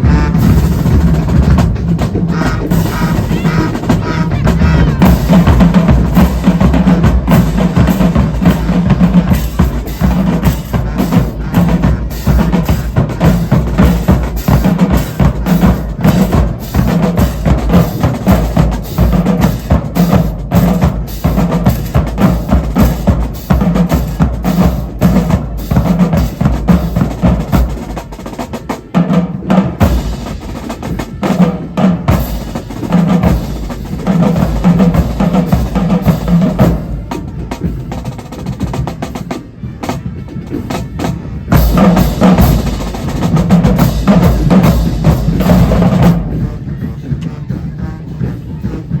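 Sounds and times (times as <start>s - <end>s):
drumline playing snare and bass: 0.0s - 49.0s.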